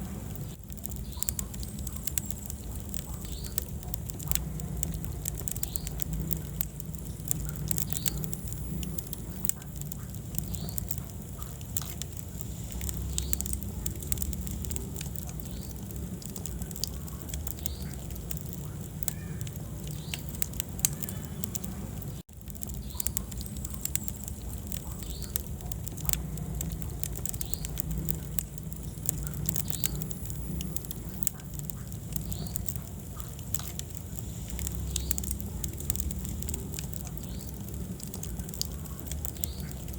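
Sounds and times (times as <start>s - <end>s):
fire crackling and popping: 0.0s - 39.9s
wood fire burning: 0.0s - 39.9s.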